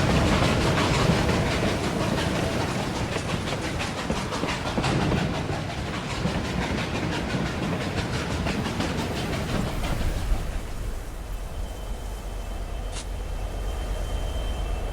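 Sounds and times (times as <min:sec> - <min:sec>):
train clattering on rails: 0:00.0 - 0:14.9.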